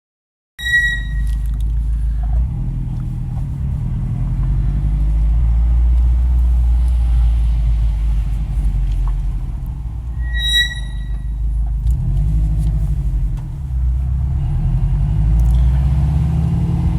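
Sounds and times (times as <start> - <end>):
brakes squealing: 0.6 - 16.0
car rolling with low rumble: 1.1 - 16.9.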